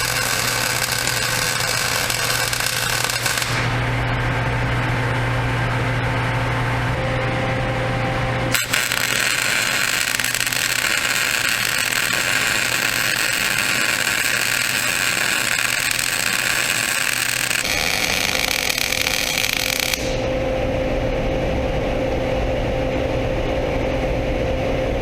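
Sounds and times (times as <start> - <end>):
arc welding hiss: 0.0 - 3.8, 8.4 - 20.3
steady low hum: 0.0 - 25.0.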